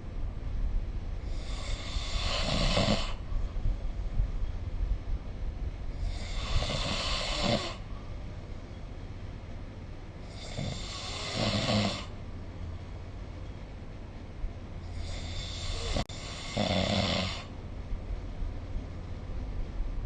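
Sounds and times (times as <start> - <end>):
person snoring: 1.2 - 3.2, 6.0 - 7.8, 10.2 - 12.1, 14.9 - 17.5.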